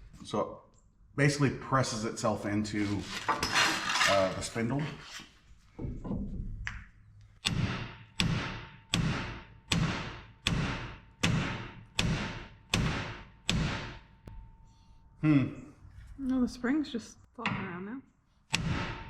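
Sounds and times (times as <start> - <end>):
hammer striking steel: 7.4 - 14.8, 18.5 - 19.0.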